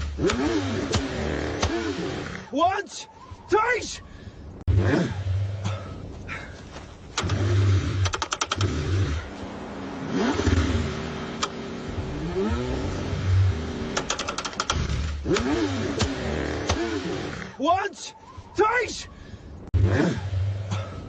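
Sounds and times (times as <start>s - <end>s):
car engine cranking: 0.0s - 2.5s, 7.0s - 17.6s
rapid clicking: 7.2s - 8.7s, 13.9s - 16.1s.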